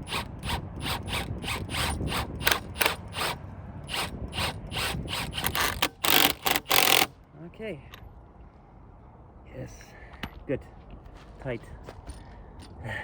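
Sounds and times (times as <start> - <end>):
ratchet wrench clicking: 0.0 - 7.1.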